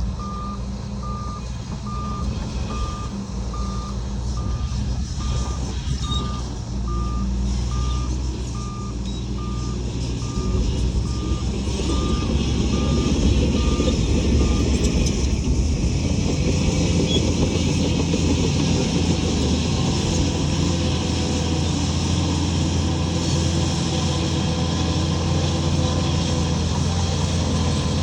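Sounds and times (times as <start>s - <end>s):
diesel engine rumbling: 0.0s - 28.0s
reverse alarm beeping: 0.2s - 15.0s.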